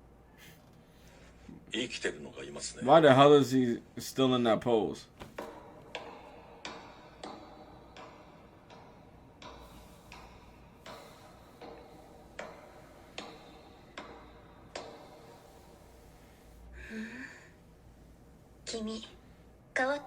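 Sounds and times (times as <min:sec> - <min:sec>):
low steady hum: 0:00.0 - 0:20.0
clock ticking: 0:05.5 - 0:15.9.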